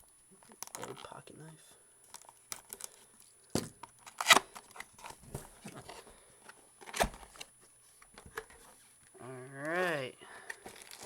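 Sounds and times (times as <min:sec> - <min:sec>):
small clicks and rustles: 0:00.0 - 0:01.2.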